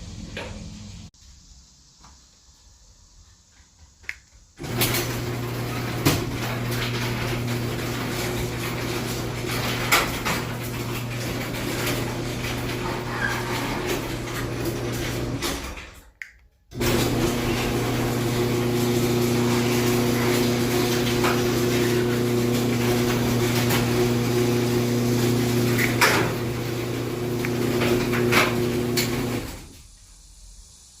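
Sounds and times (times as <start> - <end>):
garage door opener running: 4.6 - 16.1, 16.7 - 29.8.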